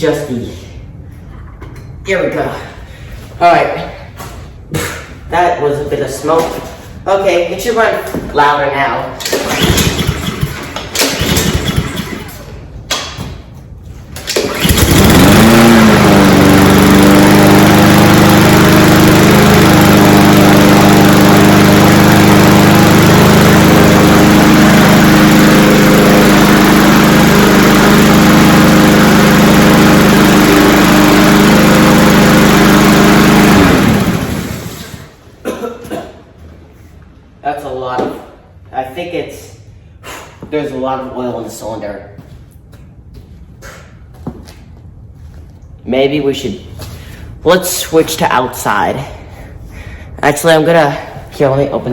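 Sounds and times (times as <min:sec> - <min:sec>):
lawn mower engine running: 0:09.2 - 0:12.5, 0:14.2 - 0:35.2.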